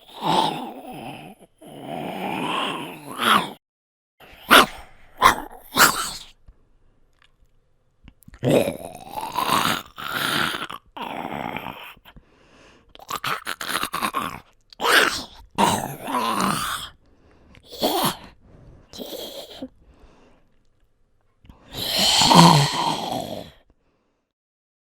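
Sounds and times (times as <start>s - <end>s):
man doing zombie growls: 0.0s - 3.6s, 4.2s - 6.4s, 8.4s - 12.1s, 13.0s - 17.0s, 17.7s - 18.4s, 19.0s - 19.7s, 21.7s - 23.6s.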